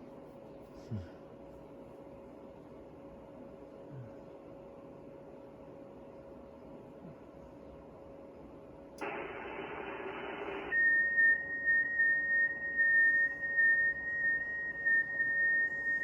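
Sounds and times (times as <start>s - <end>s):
radio receiver hiss: 9.0s - 11.0s
high whistle-like radio tone: 9.0s - 16.0s.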